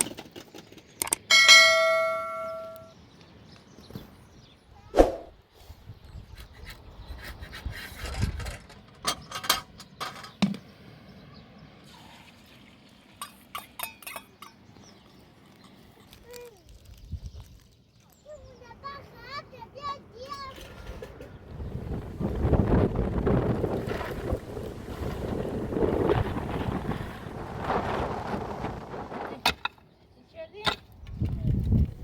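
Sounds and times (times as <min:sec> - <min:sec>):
metallic ring: 0:01.3 - 0:02.9.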